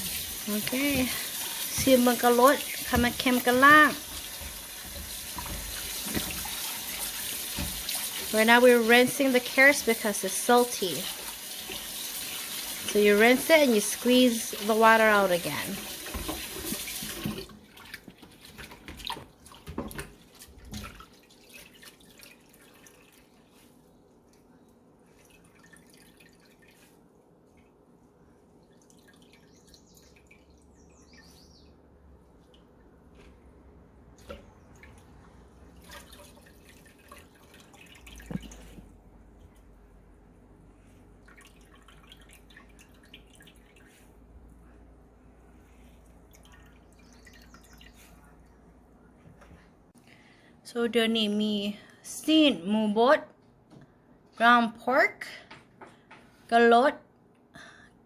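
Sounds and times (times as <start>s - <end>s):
kitchen tap running: 0.0s - 23.3s
water dripping and pattering: 0.0s - 23.6s, 24.2s - 27.8s, 28.6s - 31.3s, 34.1s - 39.7s, 41.2s - 44.2s, 46.0s - 48.7s.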